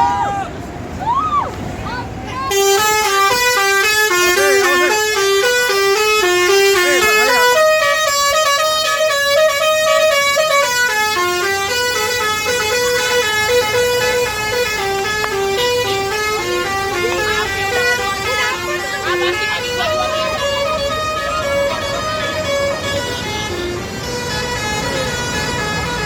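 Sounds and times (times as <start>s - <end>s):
tuned air horns playing melody: 2.5s - 26.0s.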